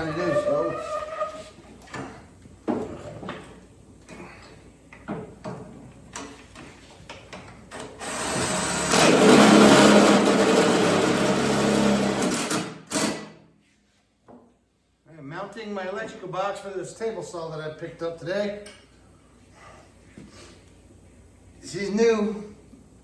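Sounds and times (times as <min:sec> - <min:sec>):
power tool motor running: 0:08.0 - 0:13.1.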